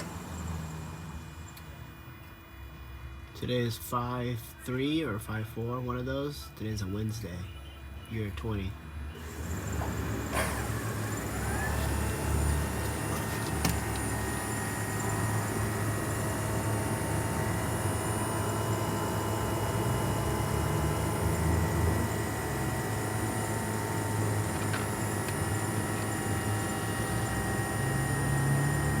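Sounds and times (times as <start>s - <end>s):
car engine running with whine: 0.0s - 29.0s.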